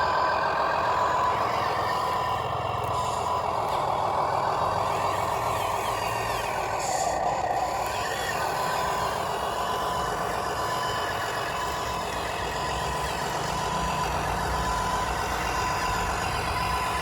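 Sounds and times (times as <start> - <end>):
truck engine running: 0.0 - 17.0
reversing beeper beeps: 8.2 - 17.0.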